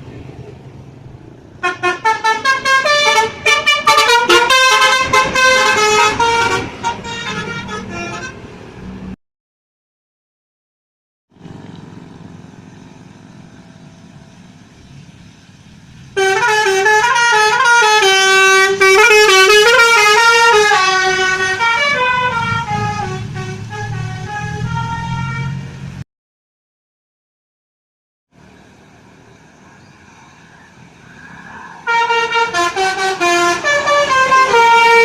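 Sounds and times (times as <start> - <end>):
bus engine running: 0.0 - 9.2, 11.3 - 26.0, 28.4 - 35.0
bus musical horn tune: 1.6 - 8.6, 16.2 - 26.0, 31.8 - 35.0.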